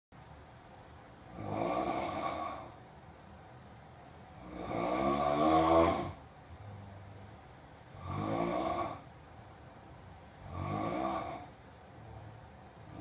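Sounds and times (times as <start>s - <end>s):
loud snoring: 1.3s - 2.8s, 4.4s - 6.2s, 7.9s - 9.1s, 10.4s - 11.6s.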